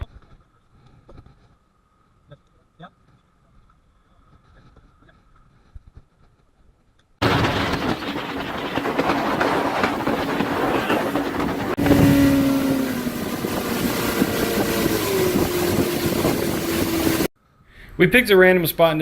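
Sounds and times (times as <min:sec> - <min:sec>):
heavy wind noise: 0:07.2 - 0:17.3
motorboat engine running: 0:07.2 - 0:17.3.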